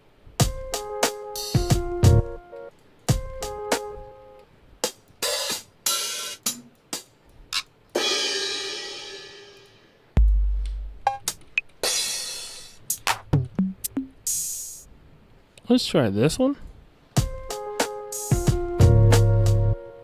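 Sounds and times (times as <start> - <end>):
hi-hat hits: 0.4 - 2.3, 3.1 - 4.0, 4.8 - 14.9, 17.2 - 19.7.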